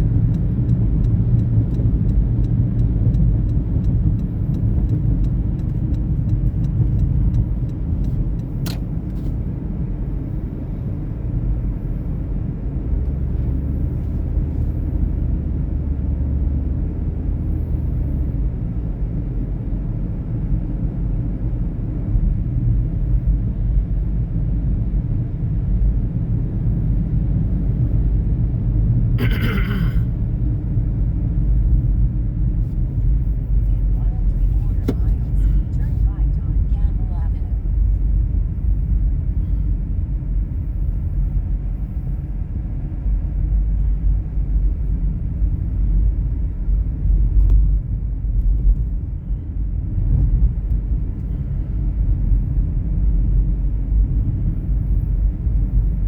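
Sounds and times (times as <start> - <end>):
vehicle rumbling: 0.0 - 56.0
sharp click: 8.6 - 8.9.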